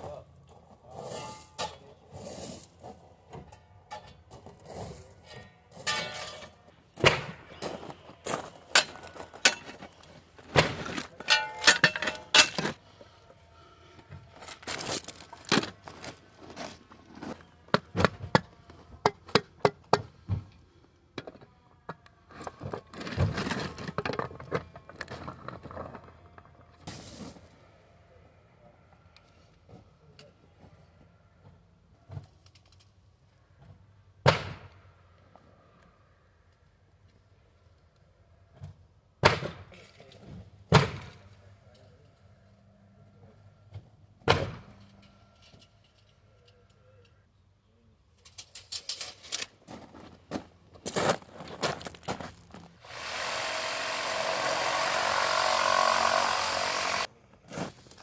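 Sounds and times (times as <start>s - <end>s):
hard objects knocking and clattering: 10.5s - 12.7s.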